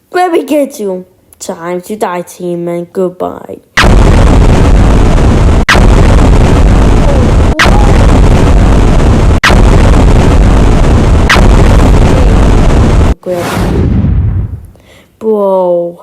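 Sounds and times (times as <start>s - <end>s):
distorted gunfire and explosions: 3.8s - 14.7s.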